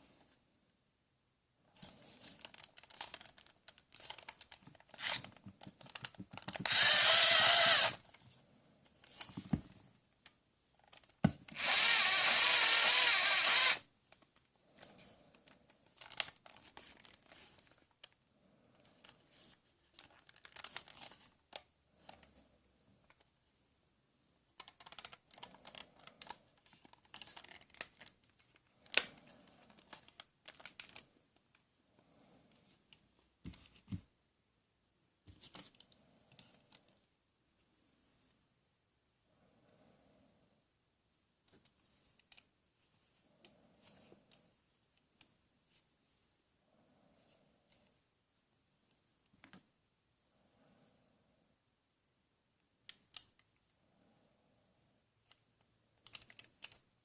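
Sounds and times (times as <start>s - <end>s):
toy power tool whirring: 5.0s - 5.2s, 6.6s - 8.0s, 11.5s - 13.8s
plastic toy tools clicking: 6.6s - 8.0s, 11.5s - 13.8s.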